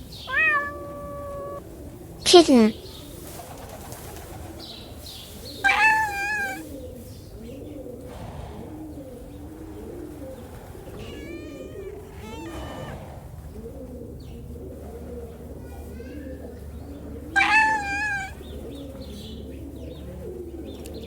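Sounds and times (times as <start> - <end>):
kitten meowing: 0.3 - 1.6, 5.6 - 6.6, 10.9 - 13.0, 17.4 - 18.4.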